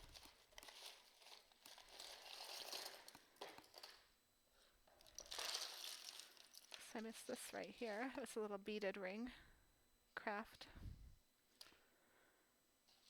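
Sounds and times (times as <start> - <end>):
jewelry rustling and crinkling: 0.0 - 8.5.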